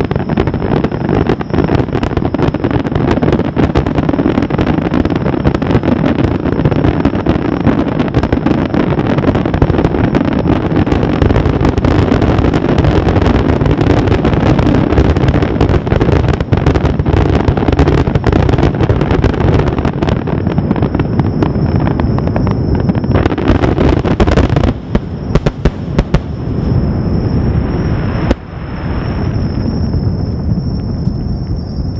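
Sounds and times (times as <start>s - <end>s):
fireworks bursting and crackling: 0.0s - 31.9s.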